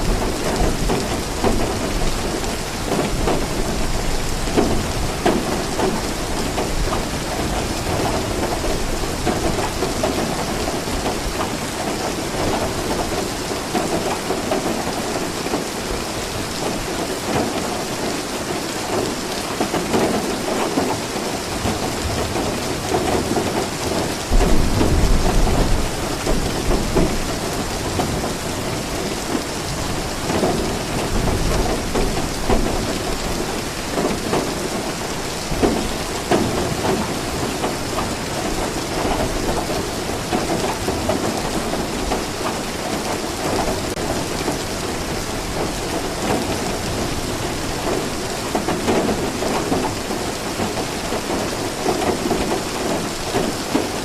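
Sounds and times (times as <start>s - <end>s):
dense rainfall pattering: 0.0s - 54.0s
thunder rolling: 24.3s - 28.3s.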